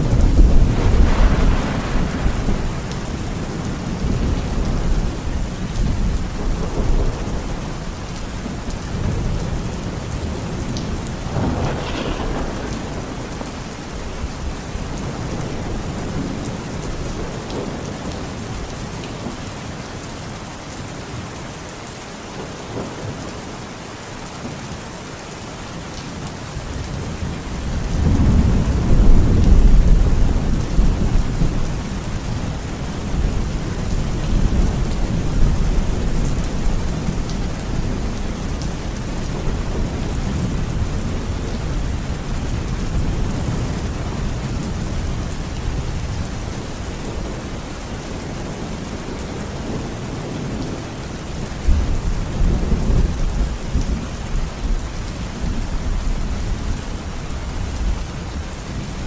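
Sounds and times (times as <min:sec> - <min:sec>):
thunder rumbling: 0:00.0 - 0:18.6, 0:27.0 - 0:47.7
heavy rain falling: 0:00.0 - 0:59.0.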